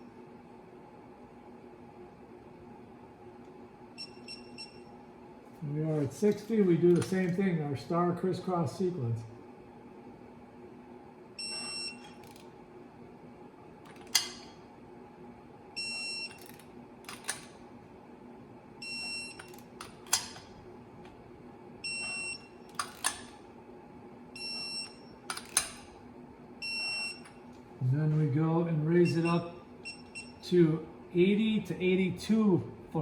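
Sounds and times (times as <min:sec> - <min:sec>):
torque wrench beeping: 0:21.9 - 0:23.3, 0:24.4 - 0:25.9, 0:26.6 - 0:27.3.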